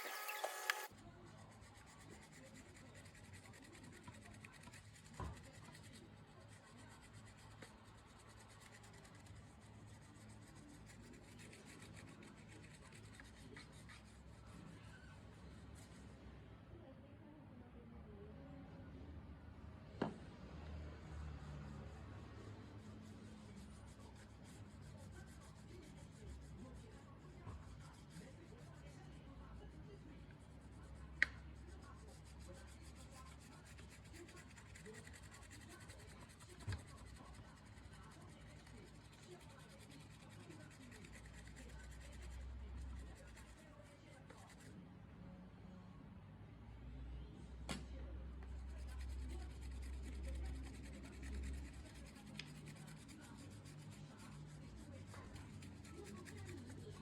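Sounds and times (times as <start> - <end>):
carving machine scratching: 0.0 - 0.9.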